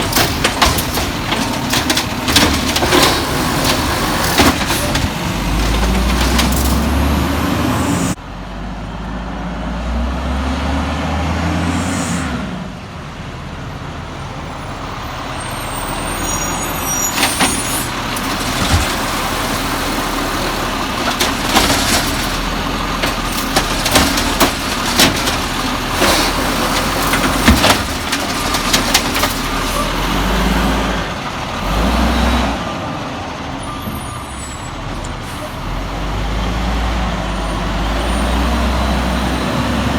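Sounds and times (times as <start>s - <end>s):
garbage truck diesel engine: 0.0s - 39.9s
sharp knocks and bangs: 17.2s - 29.6s.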